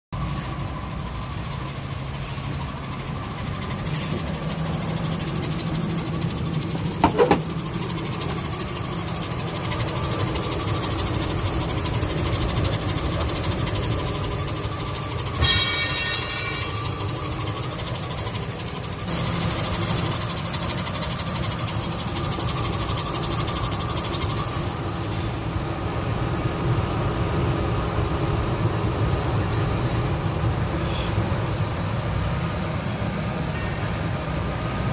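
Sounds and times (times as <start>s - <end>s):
car engine running: 0.2s - 15.5s.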